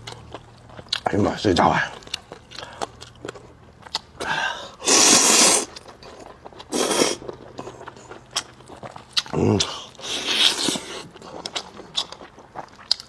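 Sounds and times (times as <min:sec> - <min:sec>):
slurping noodles: 0:04.2 - 0:08.4, 0:09.4 - 0:11.8.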